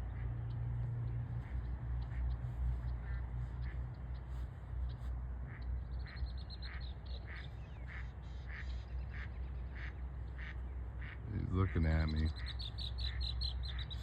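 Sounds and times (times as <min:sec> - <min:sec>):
steady low rumble: 0:00.0 - 0:11.4
bird calling repeatedly: 0:06.0 - 0:14.0.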